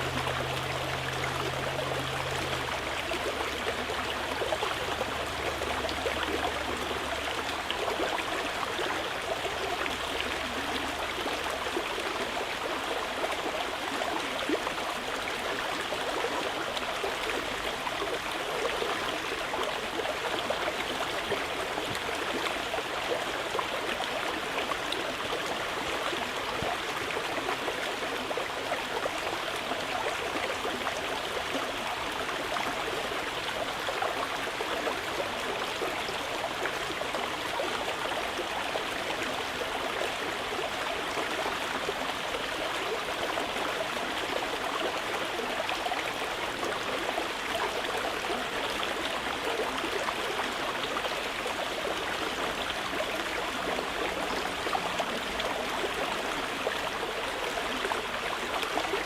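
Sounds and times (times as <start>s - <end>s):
river rushing over rocks: 0.0s - 20.4s.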